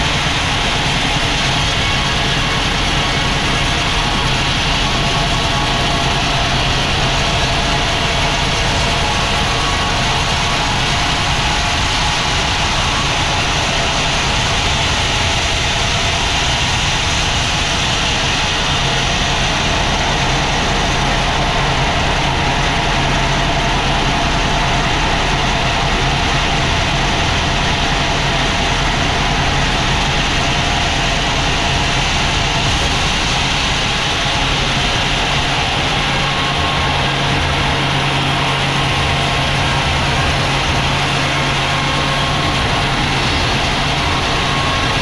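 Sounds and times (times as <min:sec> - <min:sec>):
sawmill engine drone: 0:00.0 - 0:45.0.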